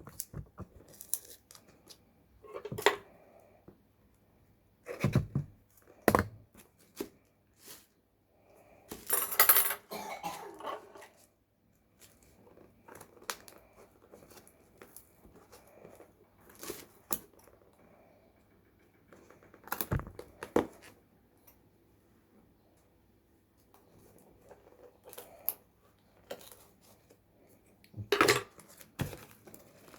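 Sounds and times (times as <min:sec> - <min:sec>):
packaging handling noise: 0:00.0 - 0:02.1, 0:28.0 - 0:29.9.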